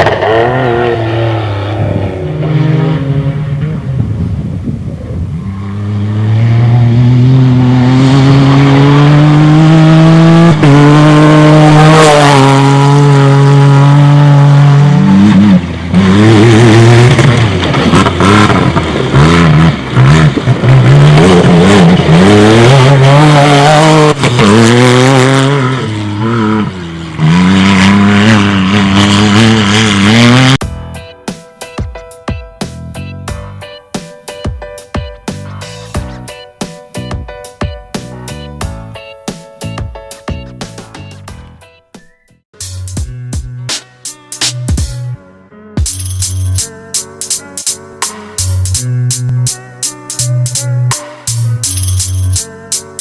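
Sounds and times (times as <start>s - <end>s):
rally car engine revving: 0.0s - 30.6s.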